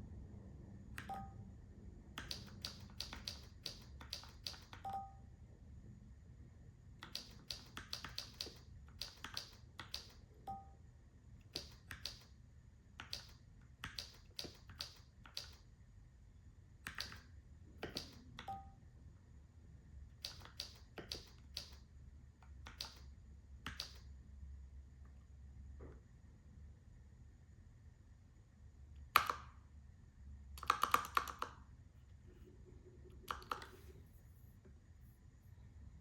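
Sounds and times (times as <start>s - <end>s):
mechanical keyboard typing: 2.2s - 5.0s, 7.0s - 10.2s, 11.5s - 12.3s, 13.0s - 15.6s, 16.9s - 18.6s, 20.2s - 21.8s, 22.5s - 24.0s, 30.6s - 31.6s, 33.2s - 33.9s.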